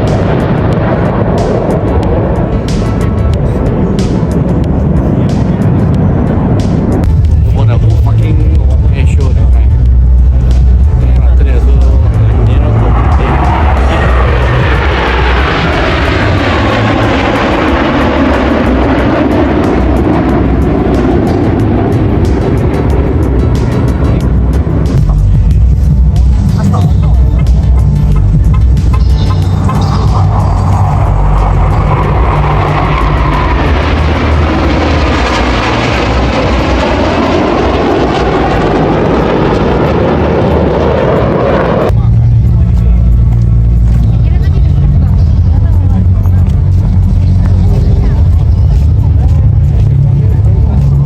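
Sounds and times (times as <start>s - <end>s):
aircraft engine roar: 0.0s - 51.0s.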